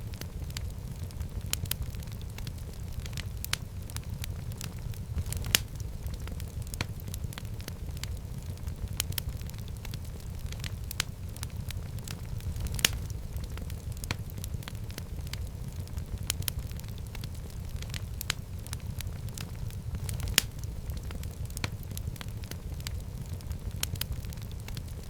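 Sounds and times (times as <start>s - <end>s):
fire crackling and popping: 0.0s - 25.0s
fire rumbling: 0.0s - 25.0s.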